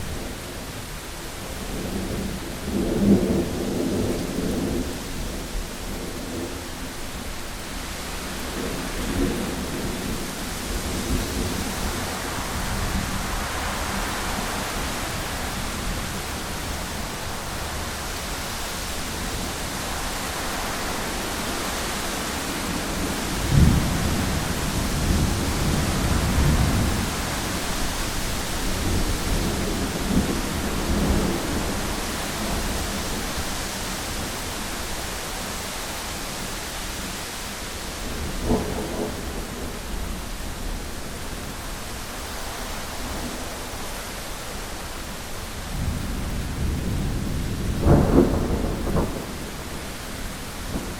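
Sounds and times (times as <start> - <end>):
rain: 0.0 - 50.9
wind hiss: 0.0 - 50.9
thunderclap rolling into rumbling: 22.9 - 27.6, 38.0 - 40.8, 45.7 - 50.9.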